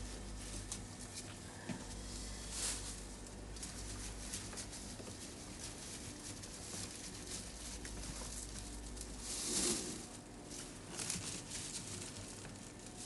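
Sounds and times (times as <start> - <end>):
low steady hum: 0.0 - 13.0
rustling and handling noise: 0.0 - 13.0.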